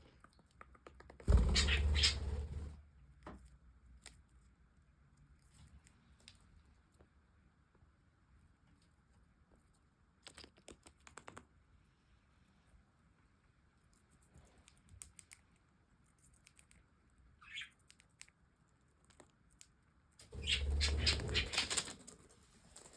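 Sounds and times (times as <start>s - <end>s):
bird chirp: 1.3s - 2.7s, 17.4s - 17.8s, 20.3s - 21.9s.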